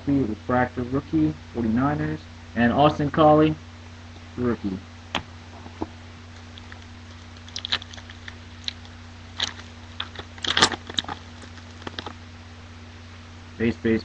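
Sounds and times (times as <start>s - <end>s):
steady low hum: 0.0s - 14.0s
card pack wrapper tearing: 6.4s - 12.1s.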